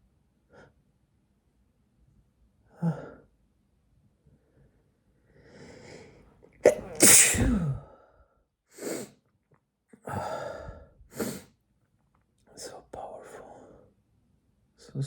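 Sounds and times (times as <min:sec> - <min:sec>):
man sneezing: 0:06.6 - 0:07.9
heavy breaths: 0:10.0 - 0:11.5.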